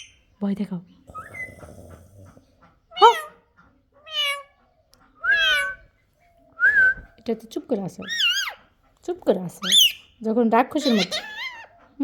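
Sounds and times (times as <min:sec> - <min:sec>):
parrot mimicking cat meow: 0:04.0 - 0:04.5, 0:05.3 - 0:05.8.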